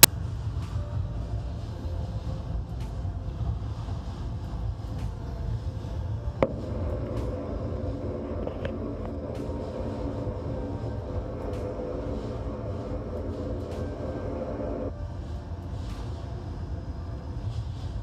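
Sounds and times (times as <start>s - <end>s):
low engine rumble: 0.0s - 18.0s.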